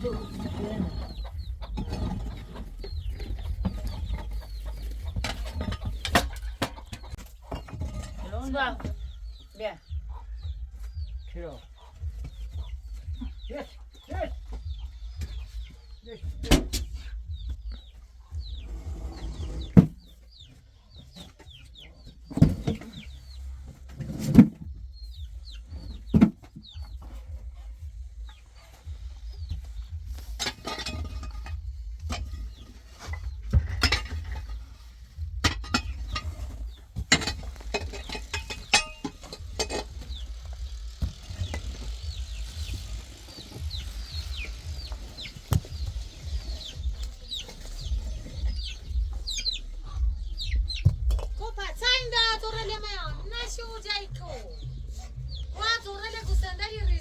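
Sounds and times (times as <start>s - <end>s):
sharp knocks and thuds: 0.0s - 20.5s, 21.4s - 54.0s
chickens clucking: 0.0s - 57.0s
high falling chirps: 37.4s - 56.8s.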